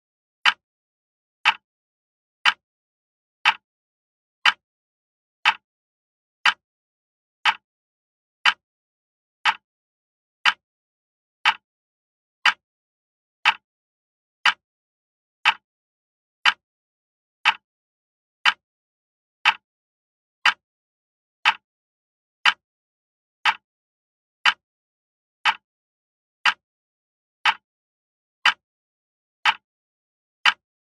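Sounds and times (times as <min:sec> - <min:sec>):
clock ticking: 0:00.4 - 0:00.6, 0:01.4 - 0:01.6, 0:02.4 - 0:02.6, 0:03.4 - 0:03.6, 0:04.4 - 0:04.6, 0:05.4 - 0:05.6, 0:06.4 - 0:06.6, 0:07.4 - 0:07.6, 0:08.4 - 0:08.6, 0:09.4 - 0:09.6, 0:10.4 - 0:10.6, 0:11.4 - 0:11.6, 0:12.4 - 0:12.6, 0:13.4 - 0:13.6, 0:14.4 - 0:14.6, 0:15.4 - 0:15.6, 0:16.4 - 0:16.6, 0:17.4 - 0:17.6, 0:18.4 - 0:18.6, 0:19.4 - 0:19.6, 0:20.4 - 0:20.6, 0:21.4 - 0:21.6, 0:22.4 - 0:22.6, 0:23.4 - 0:23.6, 0:24.4 - 0:24.6, 0:25.4 - 0:25.6, 0:26.4 - 0:26.6, 0:27.4 - 0:27.6, 0:28.4 - 0:28.6, 0:29.4 - 0:29.6, 0:30.4 - 0:30.6.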